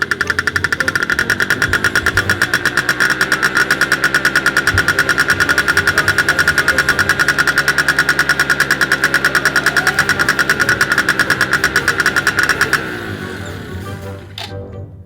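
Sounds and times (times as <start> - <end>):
engine idling: 0.0 - 14.5.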